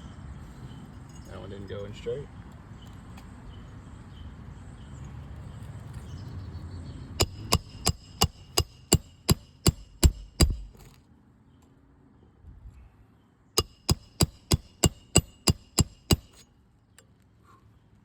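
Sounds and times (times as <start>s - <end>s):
hammer striking nail: 7.2s - 10.9s, 13.6s - 16.4s.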